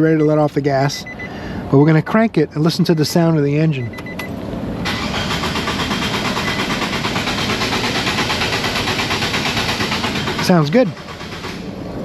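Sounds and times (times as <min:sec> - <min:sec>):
engine cranking on starter: 0:04.8 - 0:11.7.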